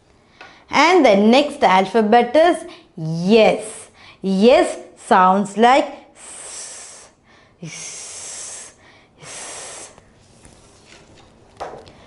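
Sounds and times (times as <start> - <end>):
person hissing sss: 6.0 - 10.1.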